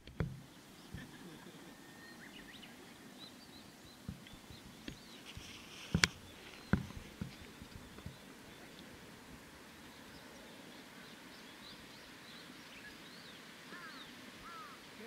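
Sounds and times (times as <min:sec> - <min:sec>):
sharp knocks: 0:00.0 - 0:00.4, 0:04.1 - 0:08.2
faint outdoor background noise: 0:00.0 - 0:15.0
small birds chirping: 0:00.0 - 0:15.0.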